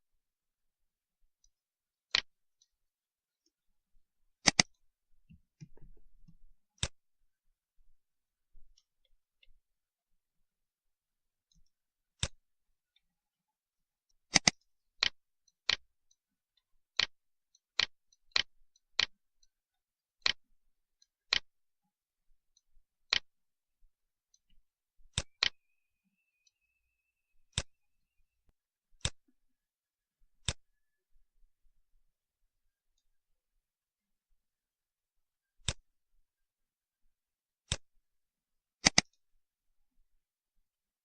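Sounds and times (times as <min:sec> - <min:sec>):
mouse buttons clicking: 0:02.1 - 0:02.3, 0:04.4 - 0:07.0, 0:14.3 - 0:15.9, 0:17.0 - 0:17.2, 0:17.8 - 0:19.2, 0:21.1 - 0:21.5, 0:23.1 - 0:23.3, 0:24.4 - 0:27.9, 0:30.4 - 0:31.0, 0:35.6 - 0:35.8, 0:38.8 - 0:39.2.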